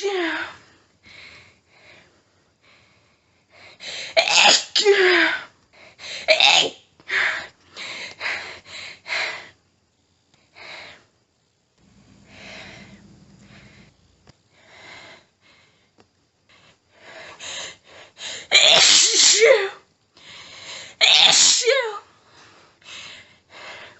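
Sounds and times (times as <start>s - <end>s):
woman panting breaths: 0.6s - 4.2s, 5.7s - 6.3s, 7.1s - 9.6s, 10.4s - 11.1s, 11.8s - 18.5s, 20.2s - 21.0s, 22.2s - 23.9s
woman sneezing: 4.1s - 5.4s, 18.5s - 19.7s, 21.0s - 22.0s.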